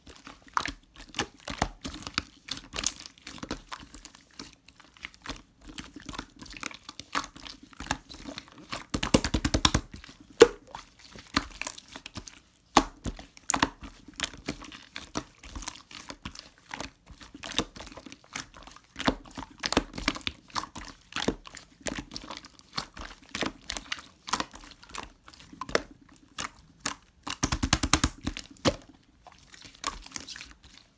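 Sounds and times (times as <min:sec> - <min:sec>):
fast even clicking: 0:27.4 - 0:28.3.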